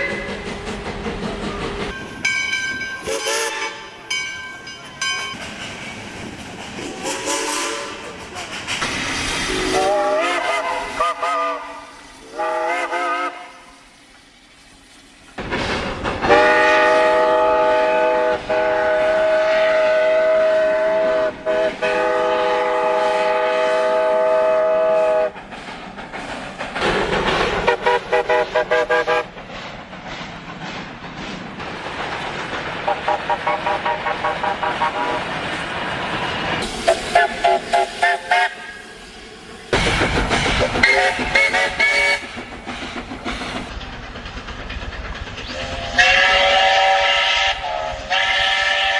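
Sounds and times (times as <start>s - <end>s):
steam whistle blasts: 3.0s - 4.0s, 7.0s - 8.1s, 9.4s - 13.8s, 16.2s - 25.4s, 36.8s - 39.0s, 40.8s - 42.3s, 45.6s - 48.9s.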